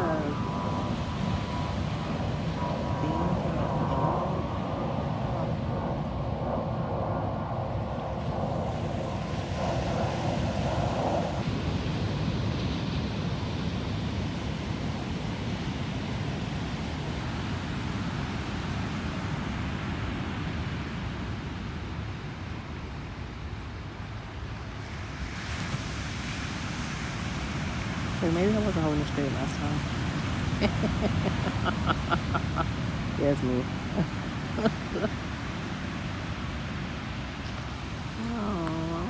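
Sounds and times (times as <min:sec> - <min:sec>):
ocean surf washing on shore: 0:00.0 - 0:06.0, 0:08.1 - 0:39.0
wind on microphone: 0:00.0 - 0:17.7, 0:25.6 - 0:39.0.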